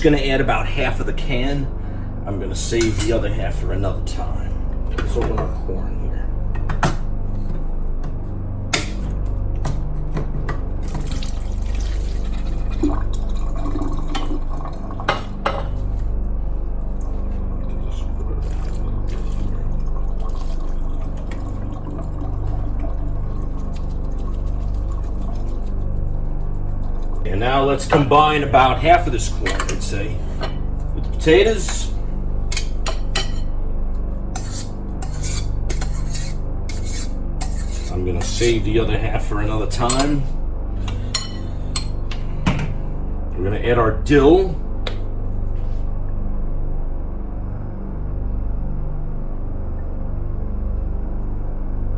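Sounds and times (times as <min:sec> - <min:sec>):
steady low hum: 0:00.0 - 0:51.9
liquid pouring and dripping: 0:10.8 - 0:15.4, 0:16.9 - 0:27.3.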